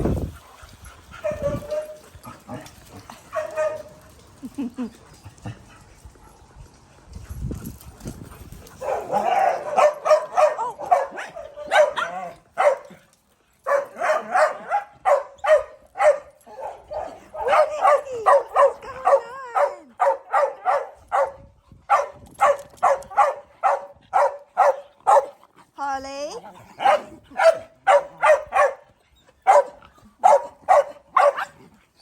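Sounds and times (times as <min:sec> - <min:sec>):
small dog barking: 0:08.8 - 0:12.9, 0:13.7 - 0:25.4, 0:26.8 - 0:28.9, 0:29.5 - 0:31.6.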